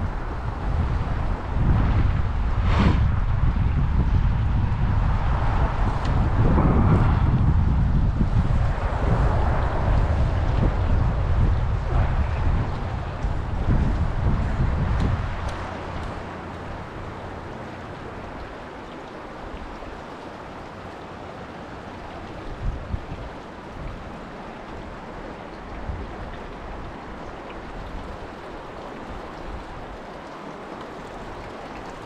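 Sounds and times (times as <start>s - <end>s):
wind buffeting microphone: 0.0s - 20.7s, 21.7s - 32.0s
river water rushing: 8.4s - 32.0s.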